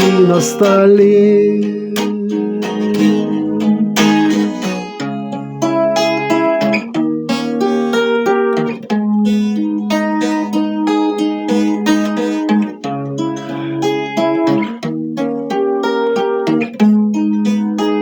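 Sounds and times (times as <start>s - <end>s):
held low chords: 0.0s - 6.7s
plucked string melody: 0.0s - 18.0s.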